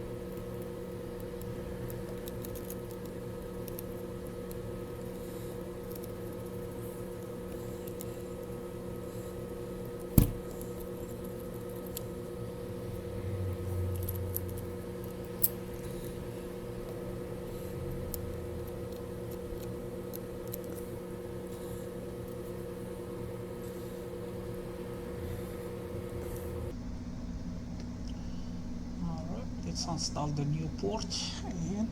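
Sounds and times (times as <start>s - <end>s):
electrical hum: 0.0s - 31.9s
sharp knock: 10.2s - 10.5s.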